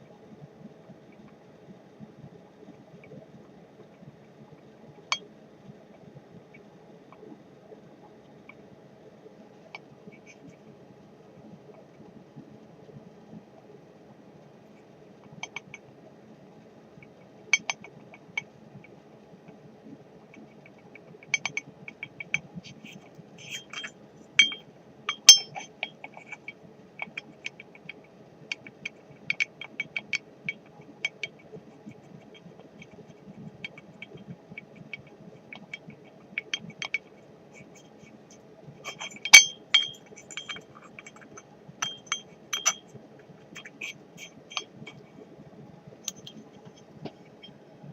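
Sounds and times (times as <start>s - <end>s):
faint steady hum: 0.0s - 47.9s
light metallic clinks: 22.8s - 27.2s, 38.8s - 42.9s.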